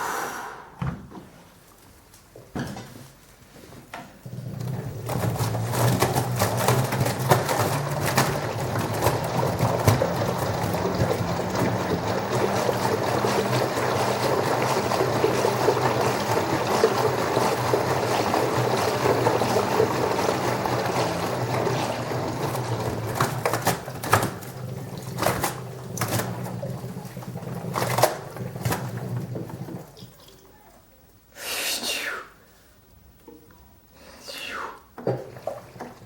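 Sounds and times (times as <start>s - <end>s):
washing machine motor hum: 4.2s - 30.6s, 35.0s - 36.0s
water sloshing in drum: 4.4s - 30.4s, 35.0s - 36.0s.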